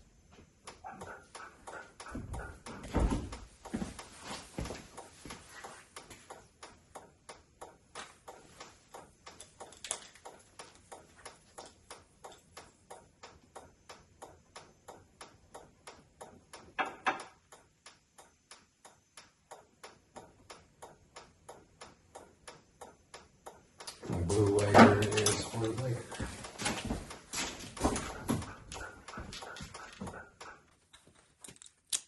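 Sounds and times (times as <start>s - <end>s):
turn-signal flasher ticking: 5.9s - 24.0s.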